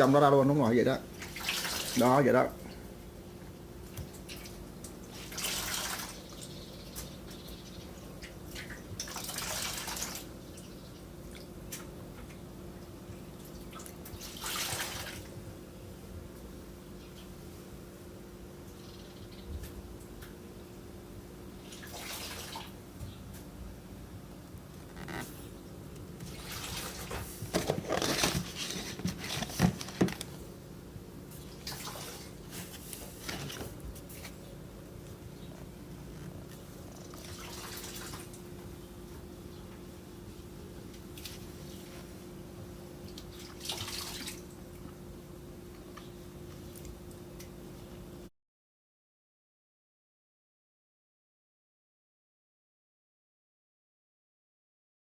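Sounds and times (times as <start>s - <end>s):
low steady hum: 0.0s - 48.3s
water splashing and running: 1.2s - 2.1s, 4.1s - 6.2s, 8.3s - 10.3s, 13.6s - 15.3s, 21.7s - 22.8s, 26.2s - 27.6s, 37.1s - 38.4s, 43.4s - 44.4s.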